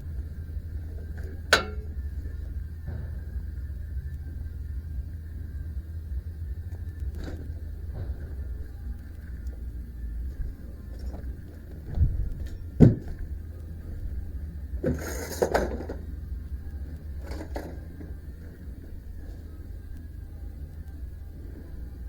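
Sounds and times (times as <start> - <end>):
steady low rumble: 0.0 - 14.8
scraping and rustling: 14.8 - 16.1.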